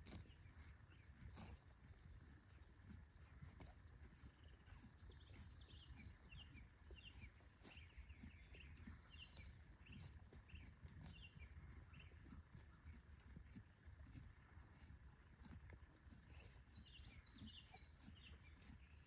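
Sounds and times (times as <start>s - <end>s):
faint bird chirping: 3.9s - 12.9s, 16.4s - 19.0s.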